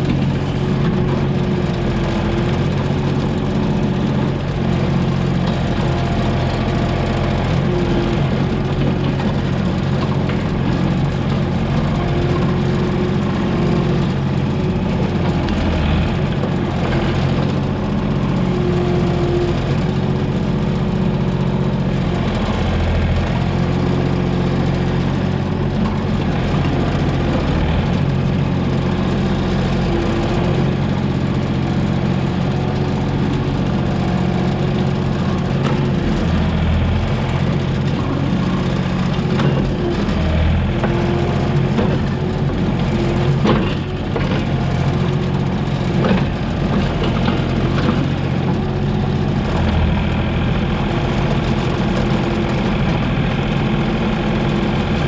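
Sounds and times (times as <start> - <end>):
hydraulic whine: 0.0 - 3.0, 33.2 - 48.6
mini excavator diesel engine: 0.0 - 55.0.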